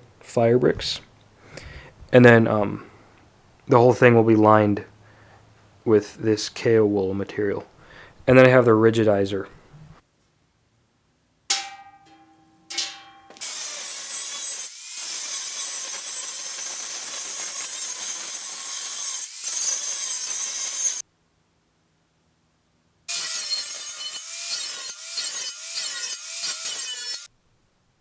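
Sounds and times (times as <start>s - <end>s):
ringing metallic strikes: 11.5s - 13.4s
power tool cutting sheet steel: 13.4s - 21.0s, 23.1s - 27.3s.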